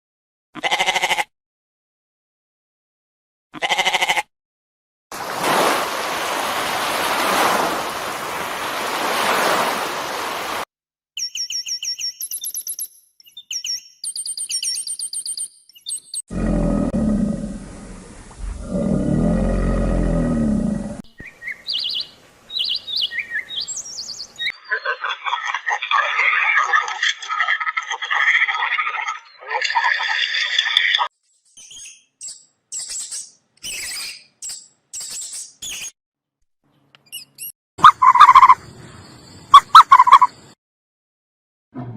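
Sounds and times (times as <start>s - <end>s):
high bird chirps: 11.2s - 16.2s, 21.1s - 25.0s, 31.4s - 35.9s, 37.0s - 40.5s
deep animal roar: 16.3s - 21.0s.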